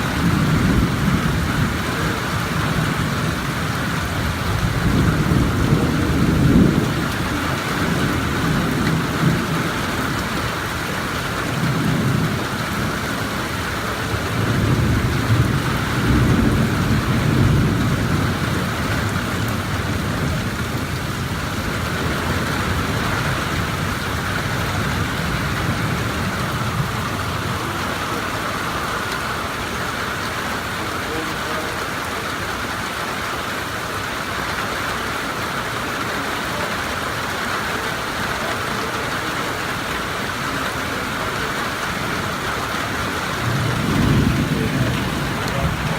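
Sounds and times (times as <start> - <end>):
low thunder rumbling: 0.0 - 31.2, 41.4 - 45.9
heavy rain falling: 0.0 - 45.9.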